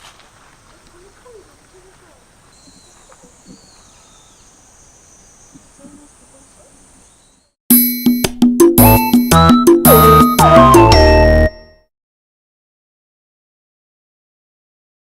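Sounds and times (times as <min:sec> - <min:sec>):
bird chirps: 0:01.2 - 0:07.6.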